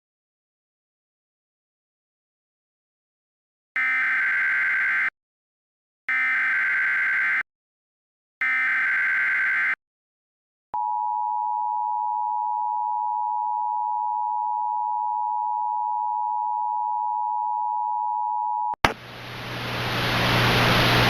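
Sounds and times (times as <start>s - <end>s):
rising hiss: 19.2s - 21.0s.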